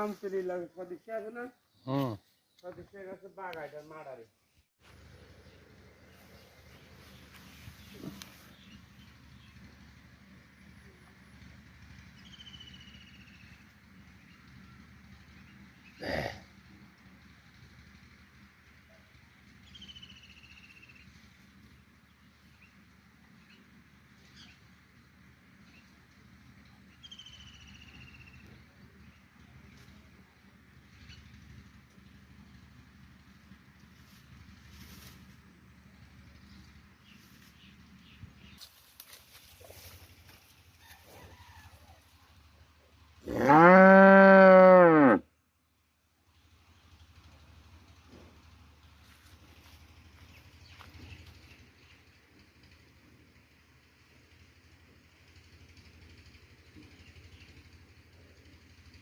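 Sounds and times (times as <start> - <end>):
cow mooing: 43.2 - 45.2.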